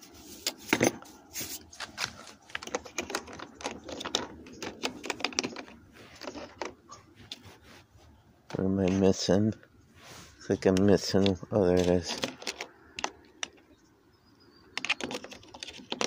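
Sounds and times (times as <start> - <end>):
tools clicking and clinking: 2.5 - 6.8, 10.8 - 13.6.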